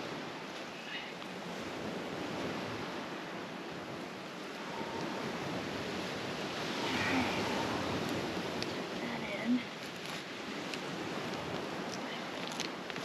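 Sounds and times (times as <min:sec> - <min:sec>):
wind: 0:00.0 - 0:13.0
surf: 0:02.0 - 0:12.2.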